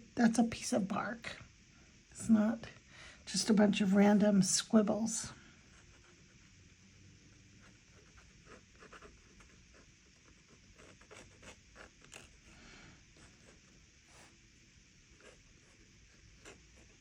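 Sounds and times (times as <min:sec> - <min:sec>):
pencil scratching on paper: 0:07.6 - 0:12.5, 0:15.1 - 0:17.0.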